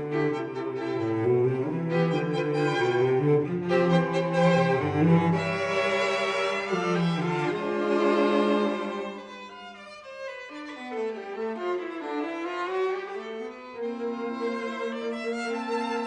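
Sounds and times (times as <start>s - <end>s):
violin and cello playing: 0.0s - 16.0s.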